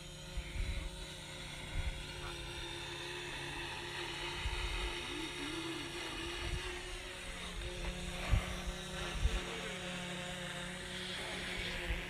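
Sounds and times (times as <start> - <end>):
drone propellers whining: 0.0 - 12.0.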